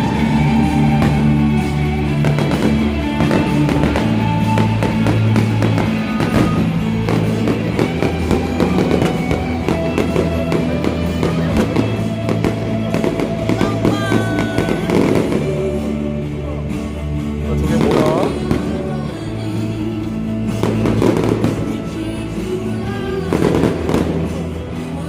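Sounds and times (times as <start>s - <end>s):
fireworks popping and crackling: 0.0s - 15.9s, 17.5s - 19.1s, 20.4s - 25.0s
music with bass line and melody: 0.0s - 25.0s.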